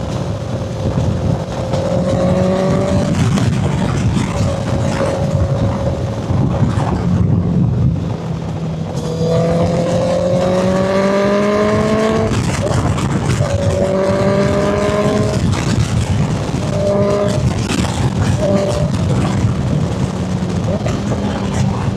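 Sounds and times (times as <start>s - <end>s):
motorcycle engine accelerating: 0.0s - 21.9s.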